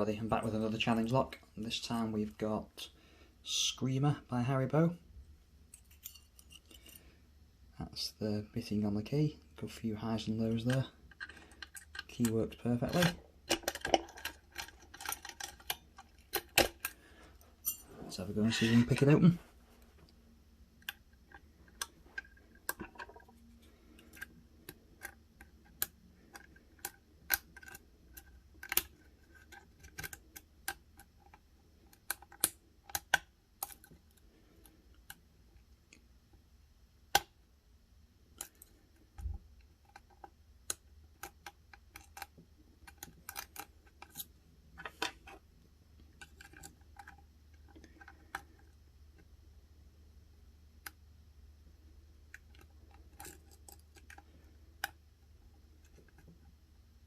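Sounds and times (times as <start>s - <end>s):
lock pick clicking and scraping: 10.6s - 17.0s, 23.9s - 34.2s, 39.8s - 45.4s, 46.1s - 48.8s.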